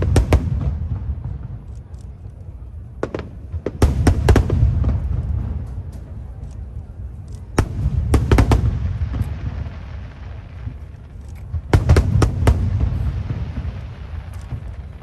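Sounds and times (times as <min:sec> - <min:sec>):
fireworks bursting with sharp bangs: 0:00.0 - 0:15.0
low rumble of booms: 0:07.5 - 0:15.0.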